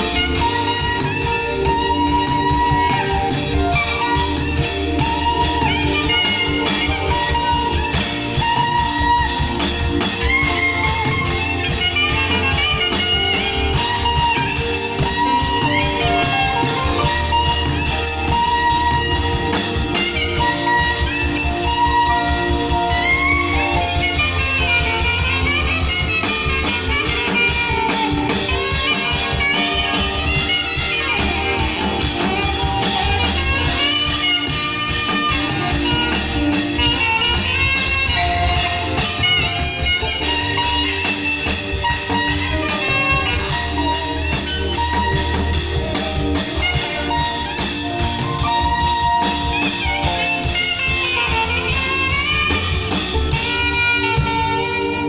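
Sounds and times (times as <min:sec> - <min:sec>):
bass and drums: 0:00.0 - 0:55.0
guitar: 0:00.0 - 0:55.0
saxophone melody: 0:00.0 - 0:55.0.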